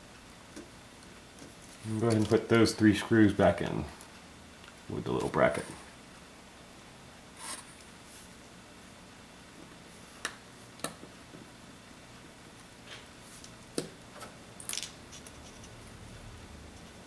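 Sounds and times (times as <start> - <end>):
small tools and screws clicking: 14.6 - 15.8.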